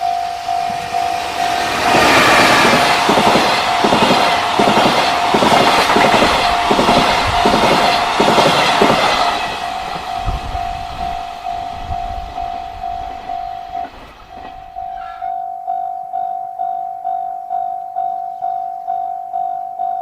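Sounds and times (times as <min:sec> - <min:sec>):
crossing warning bell ringing: 0:00.0 - 0:20.0
train wheels clacking over rail joints: 0:01.6 - 0:11.7, 0:12.8 - 0:15.2.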